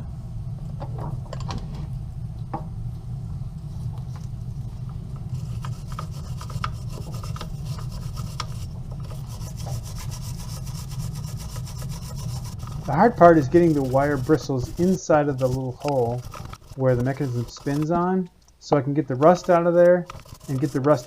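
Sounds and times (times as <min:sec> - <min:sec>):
low steady hum: 0:00.0 - 0:21.0
wire brush scrubbing metal: 0:05.2 - 0:21.0.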